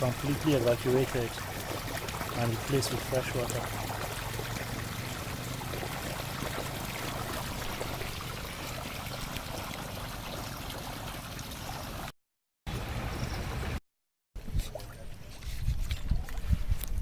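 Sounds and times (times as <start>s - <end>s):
water rushing out of drain pipe: 0.0s - 12.1s.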